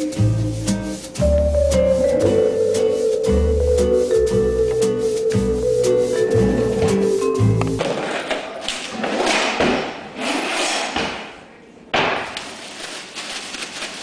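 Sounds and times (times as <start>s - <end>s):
scraping rustle: 12.5s - 14.0s.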